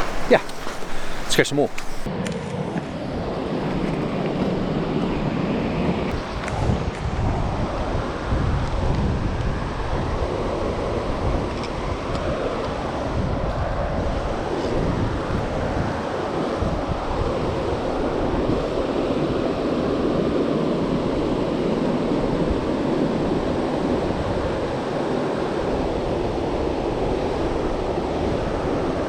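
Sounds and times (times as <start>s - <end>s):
river rushing over rocks: 0.0s - 2.1s
wind buffeting microphone: 0.0s - 2.1s.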